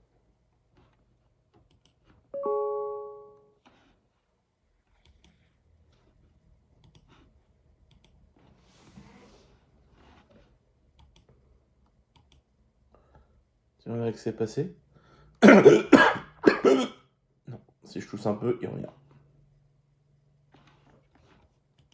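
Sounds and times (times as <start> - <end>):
computer keyboard clicks: 1.6 - 2.0, 6.8 - 7.1, 7.9 - 8.2, 11.0 - 11.3, 12.1 - 12.5
short chime: 2.4 - 3.6.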